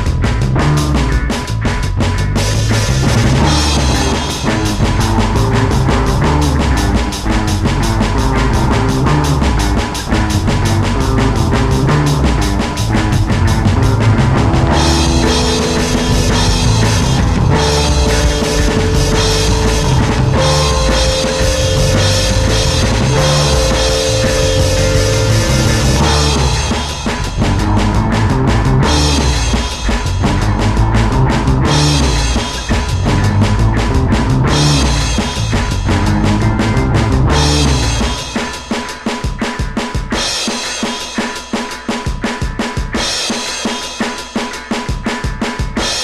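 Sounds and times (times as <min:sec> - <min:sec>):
drum kit hits: 0:00.0 - 0:46.0
rock music: 0:00.0 - 0:46.0.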